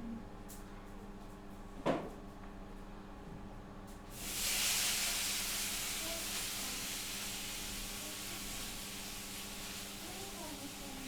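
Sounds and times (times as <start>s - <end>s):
steady hiss: 4.1s - 11.0s.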